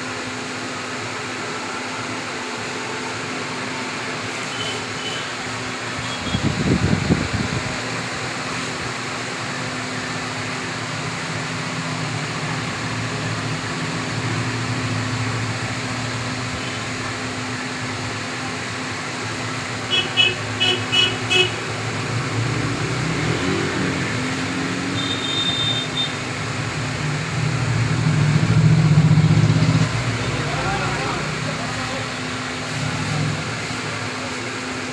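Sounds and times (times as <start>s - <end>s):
street traffic: 0.0s - 34.9s
vehicle passing close: 21.7s - 25.0s, 26.4s - 32.0s
horn beeps: 24.9s - 26.2s.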